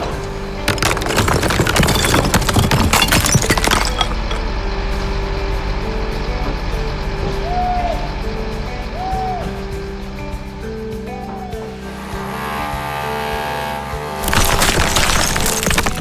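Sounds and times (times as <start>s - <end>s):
debris crashing down: 0.5s - 4.6s, 14.2s - 16.0s
glassy clinks: 0.8s - 4.4s.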